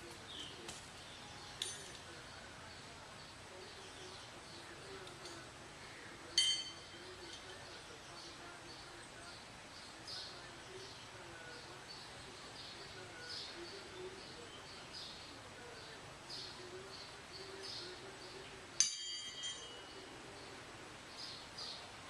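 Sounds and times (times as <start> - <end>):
small birds chirping: 0.0 - 22.0
metallic ringing strike: 6.4 - 7.0.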